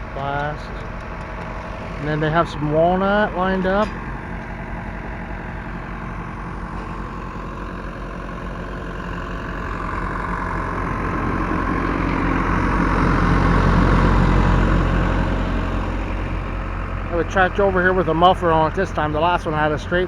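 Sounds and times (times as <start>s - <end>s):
tractor engine running: 0.0s - 20.0s.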